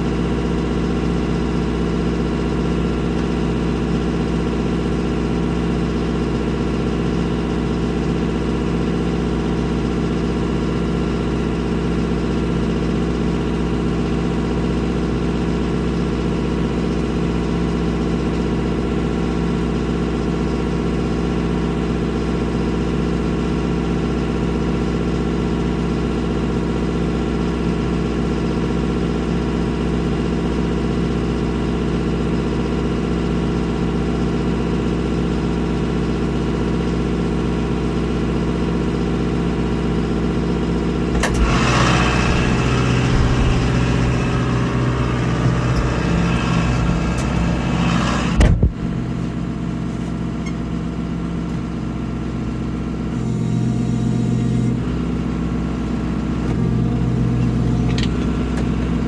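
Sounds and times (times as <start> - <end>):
farm vehicle engine running: 0.0 - 59.0
short knock: 41.2 - 49.2.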